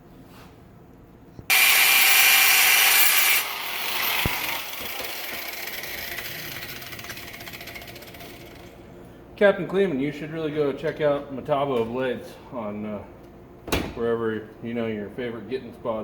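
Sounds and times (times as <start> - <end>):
angle grinder whining: 1.5 - 8.8.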